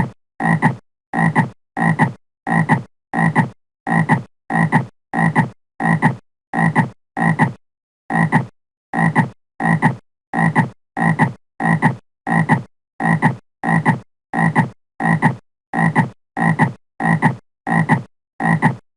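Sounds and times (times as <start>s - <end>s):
frog croaking: 10.4s - 18.8s.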